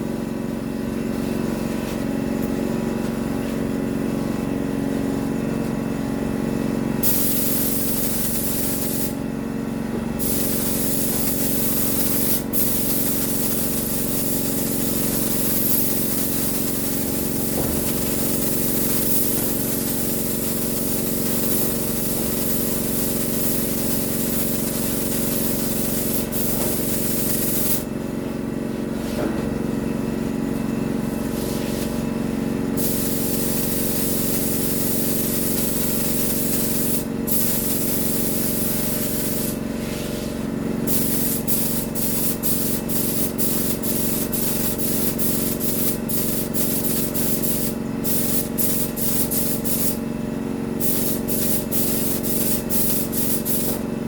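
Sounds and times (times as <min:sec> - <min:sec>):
paint spray gun hissing: 0:07.0 - 0:09.2, 0:10.2 - 0:27.9, 0:32.8 - 0:50.1, 0:50.8 - 0:53.9
steady hum: 0:07.0 - 0:50.0.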